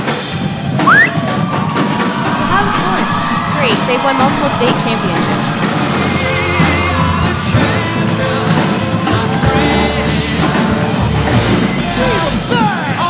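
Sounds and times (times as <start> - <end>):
rock music: 1.6 - 13.0.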